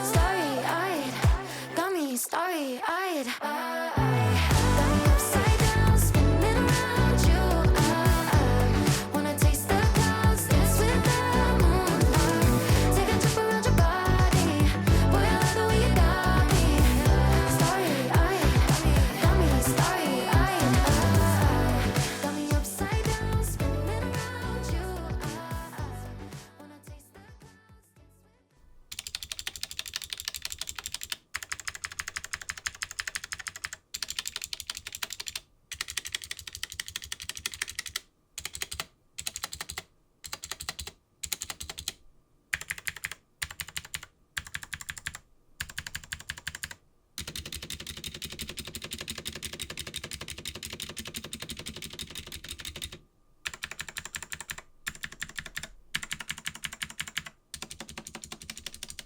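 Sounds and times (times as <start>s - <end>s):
clicky keyboard keys pressed rapidly: 28.9s - 59.0s.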